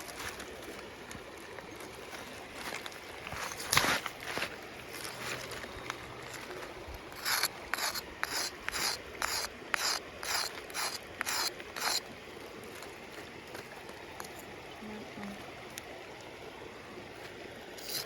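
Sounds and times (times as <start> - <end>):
shale scraping on stone: 6.2 - 12.1, 17.8 - 18.0.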